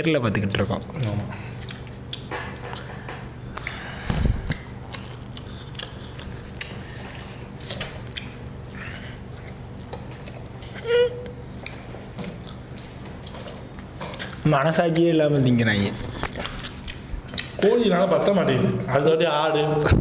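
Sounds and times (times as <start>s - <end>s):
low room hum: 0.0s - 20.0s
chewing and tearing meat: 0.5s - 3.0s, 4.4s - 10.8s, 11.5s - 14.5s, 16.0s - 17.6s.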